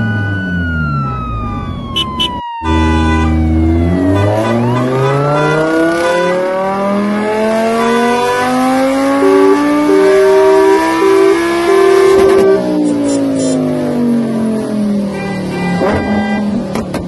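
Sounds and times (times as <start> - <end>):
car engine accelerating: 3.3 - 15.0.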